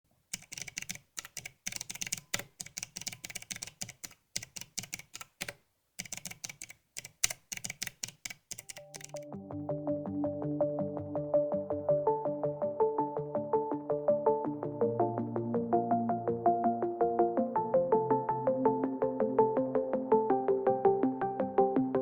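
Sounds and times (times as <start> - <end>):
mechanical keyboard typing: 0.3 - 9.2
synthesizer music: 8.7 - 22.0.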